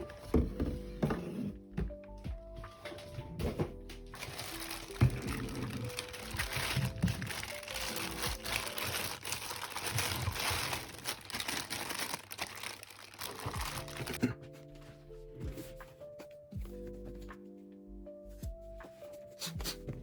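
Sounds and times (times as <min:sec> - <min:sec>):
background music: 0:00.0 - 0:20.0
plastic packaging crinkling: 0:04.2 - 0:14.2.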